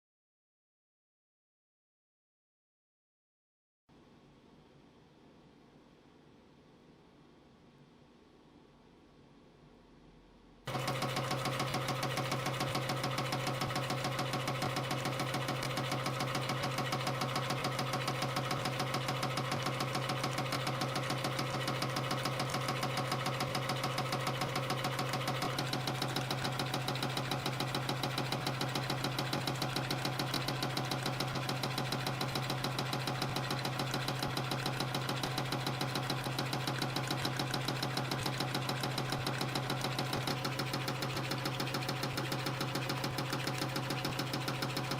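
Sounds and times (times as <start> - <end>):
spring coiling machine rapid rhythm: 10.7 - 44.9.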